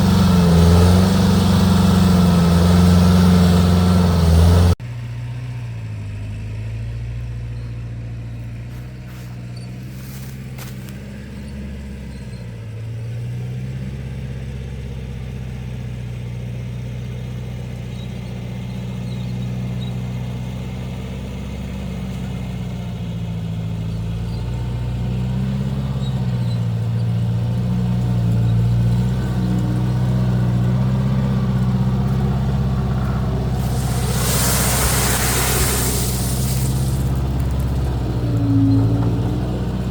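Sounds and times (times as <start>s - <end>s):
engine running: 0.0s - 12.4s, 28.7s - 39.9s
loud hiss: 33.6s - 37.6s.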